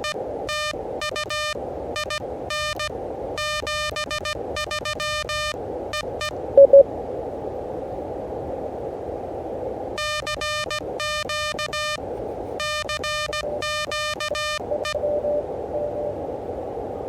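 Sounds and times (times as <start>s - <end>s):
weak morse signal: 0.0s - 5.6s, 6.2s - 6.8s, 10.0s - 12.0s, 12.6s - 16.2s
morse code sidetone: 0.0s - 6.8s, 10.0s - 12.0s, 12.6s - 16.2s
radio band hiss: 12.5s - 16.2s.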